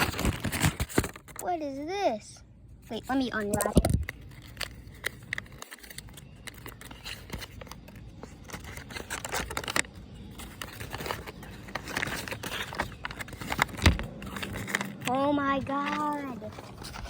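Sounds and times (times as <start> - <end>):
paper wrapping crinkling: 3.6 - 17.0.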